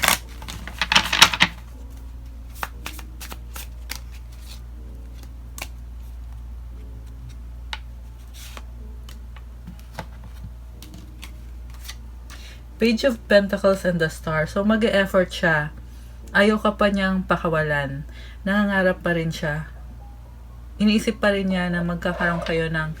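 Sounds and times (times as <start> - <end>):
cards riffling: 2.5 - 5.8.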